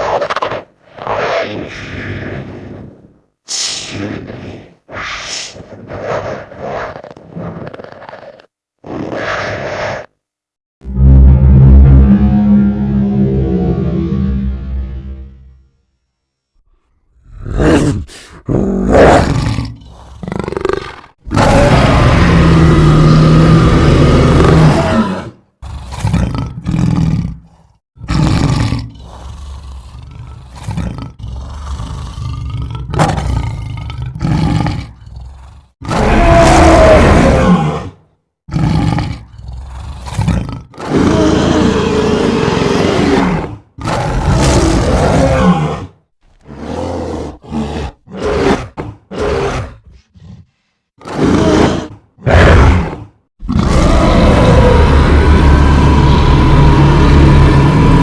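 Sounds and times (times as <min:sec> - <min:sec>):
dinosaur roars: 0:10.8 - 0:15.6, 0:17.2 - 0:27.4, 0:28.0 - 0:58.0.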